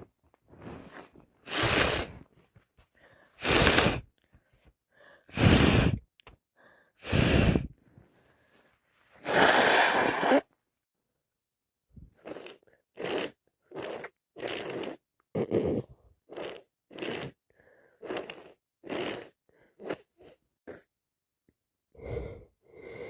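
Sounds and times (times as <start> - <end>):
woman gasping breaths: 2.9 - 10.4.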